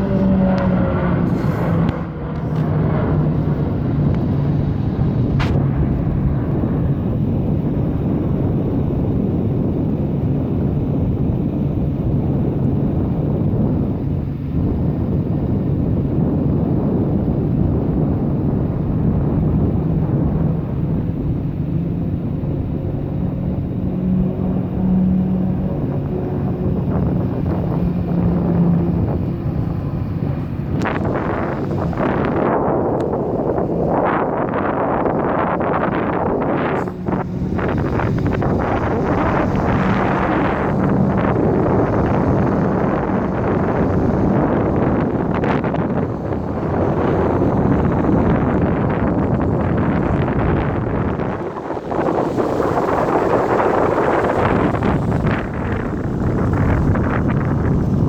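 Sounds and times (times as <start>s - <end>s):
low engine rumble: 0.0s - 58.0s
wind on microphone: 0.0s - 58.0s
faint droning tones: 17.2s - 58.0s.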